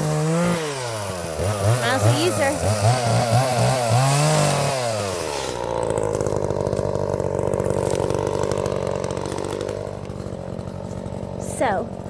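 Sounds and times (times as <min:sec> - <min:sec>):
chainsaw idling: 0:00.0 - 0:12.0.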